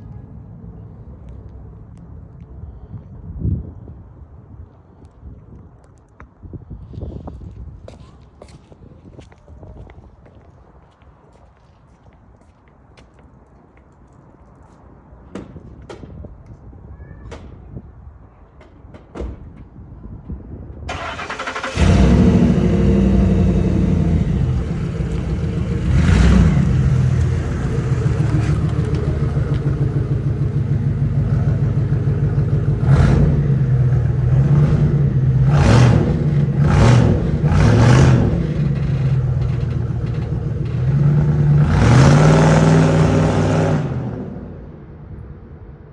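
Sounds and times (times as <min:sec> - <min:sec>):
truck engine idling loudly: 0:20.9 - 0:42.8
engine cranking: 0:20.9 - 0:43.1.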